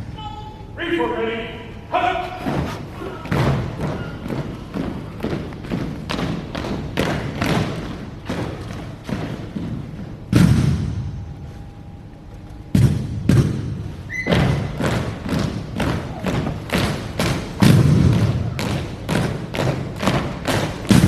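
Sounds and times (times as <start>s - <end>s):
heavy thump: 12.8s - 21.0s.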